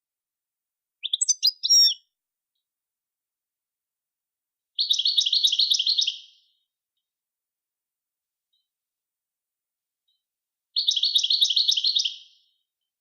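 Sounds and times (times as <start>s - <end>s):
songbird singing: 1.0s - 2.0s, 10.8s - 12.3s.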